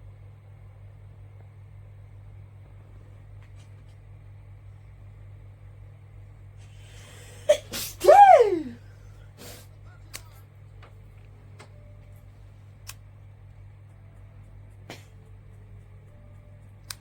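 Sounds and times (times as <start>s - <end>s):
low steady hum: 0.0s - 17.0s
person sneezing: 7.2s - 8.8s, 9.4s - 9.7s.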